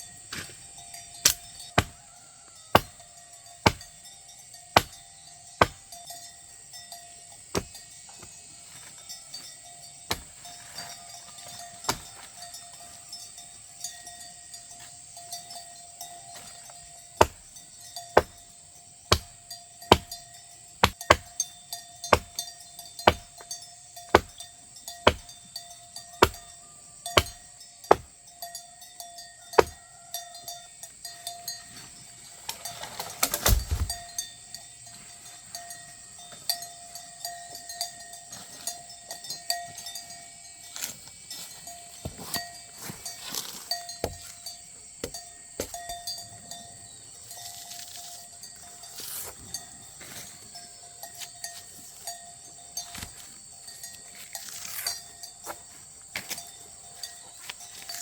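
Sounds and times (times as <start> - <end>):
blade chopping into wood: 1.2 - 2.0, 2.8 - 3.0, 3.6 - 4.0, 4.8 - 5.0, 5.6 - 5.9, 7.5 - 7.8, 10.1 - 10.4, 17.2 - 17.5, 18.2 - 18.4, 19.1 - 20.2, 20.8 - 21.4, 22.1 - 22.4, 23.0 - 23.4, 24.1 - 24.4, 25.0 - 25.3, 26.2 - 26.4, 27.2 - 28.1, 29.6 - 29.8, 33.2 - 34.0.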